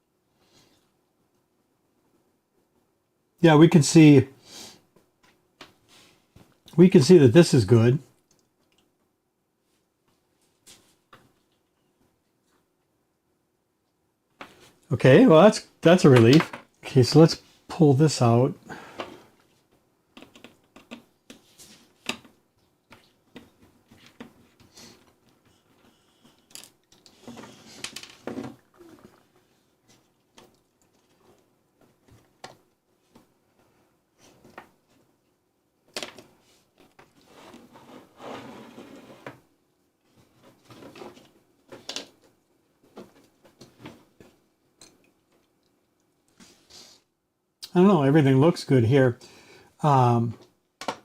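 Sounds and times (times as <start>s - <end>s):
rustling and scraping: 9.6s - 12.7s, 18.8s - 35.2s, 36.1s - 44.4s.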